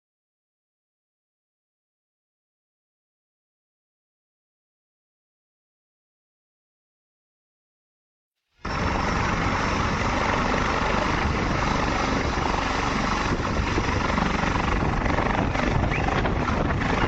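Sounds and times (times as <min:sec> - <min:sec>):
helicopter rotor and engine: 0:08.6 - 0:17.0.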